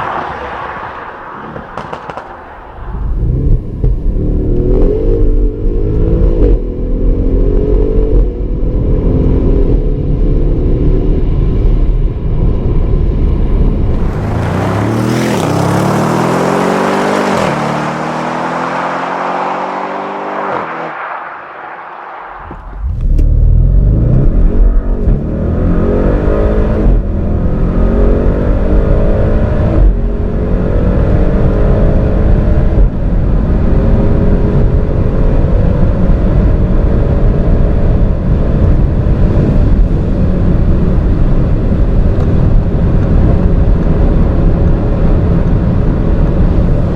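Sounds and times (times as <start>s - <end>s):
wind noise rush: 0.0s - 5.1s, 12.1s - 17.6s, 18.4s - 46.9s
car engine accelerating hard: 13.3s - 46.9s.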